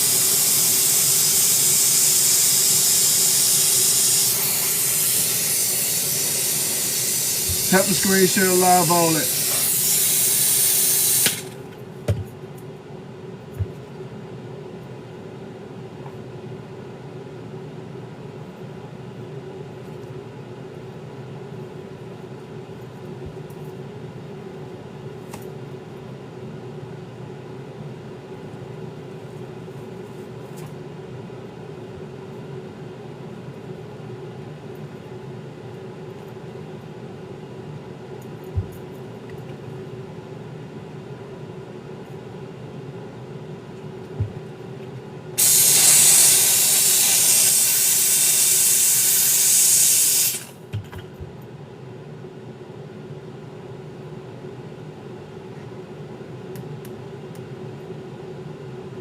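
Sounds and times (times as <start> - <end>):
steady mechanical hum: 0.0 - 59.0.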